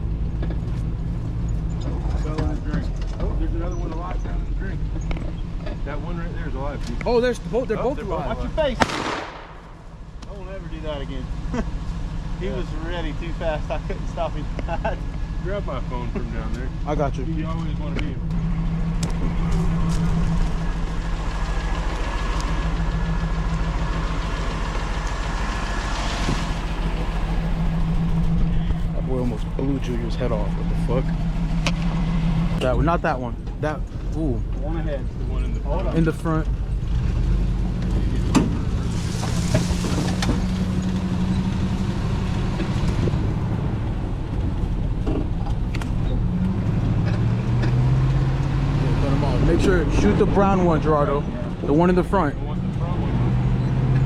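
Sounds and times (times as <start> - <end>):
vehicle engine droning: 0.0 - 54.0
sharp knocks and rattles: 1.4 - 5.9.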